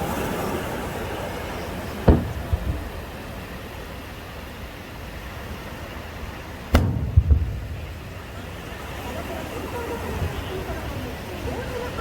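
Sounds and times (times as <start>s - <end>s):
crowd rumble: 0.0s - 12.0s
firework shell booming: 2.0s - 3.6s, 6.7s - 8.8s.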